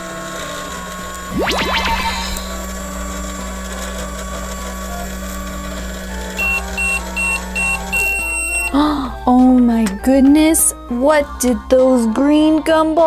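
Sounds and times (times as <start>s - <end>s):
toy microwave electronic hum: 0.0s - 10.9s
rising electronic sweep: 1.3s - 2.7s.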